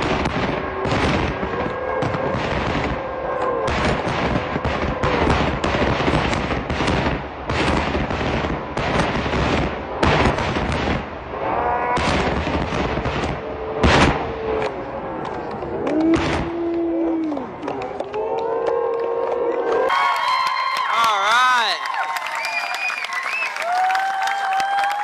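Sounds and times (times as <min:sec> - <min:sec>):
fireworks booming and crackling: 0:00.0 - 0:18.2
whistling fireworks: 0:00.0 - 0:19.0, 0:22.0 - 0:25.0.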